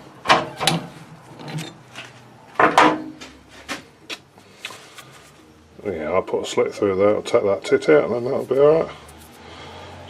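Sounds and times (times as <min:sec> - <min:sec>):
metal part scraping and knocking: 0:00.6 - 0:03.0.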